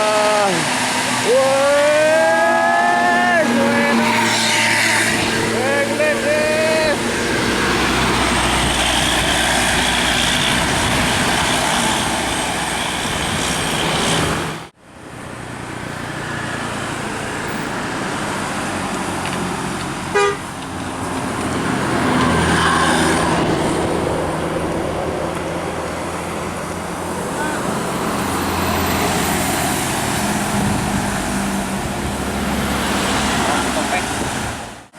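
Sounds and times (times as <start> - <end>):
bus and traffic road noise: 0.0 - 34.9
brief horn toot: 20.1 - 20.5.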